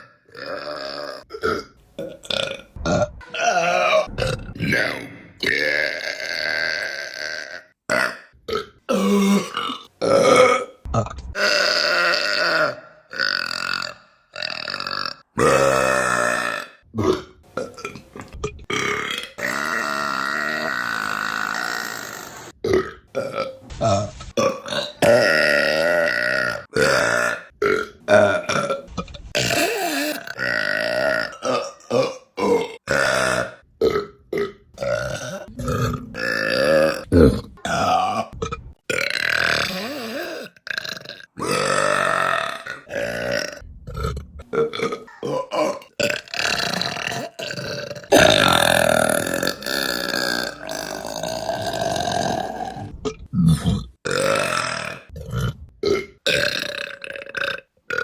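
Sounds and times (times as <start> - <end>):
woman burping: 5.4 - 18.0, 29.4 - 58.0.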